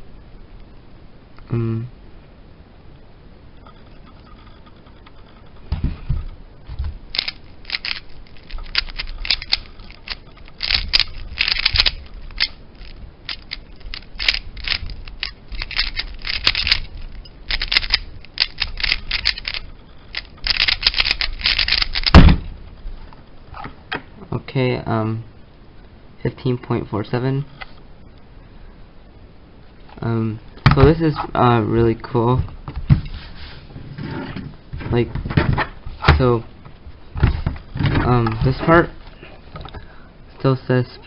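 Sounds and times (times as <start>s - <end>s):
rapid plastic clicking of cube: 7.1s - 22.3s.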